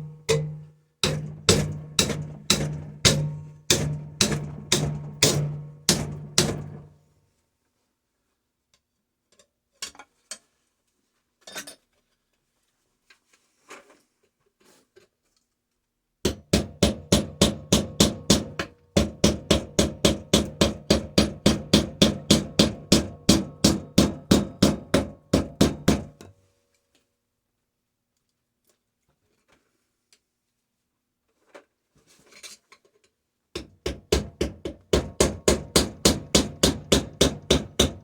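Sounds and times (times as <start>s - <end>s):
hammer striking metal: 0.0s - 6.9s, 16.3s - 26.2s, 33.6s - 38.0s.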